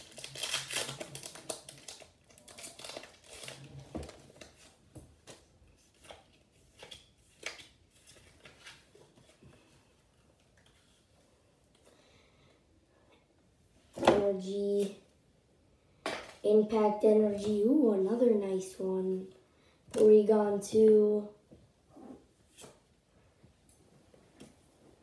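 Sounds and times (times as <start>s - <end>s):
foil wrapper tearing and crinkling: 0.0s - 4.4s.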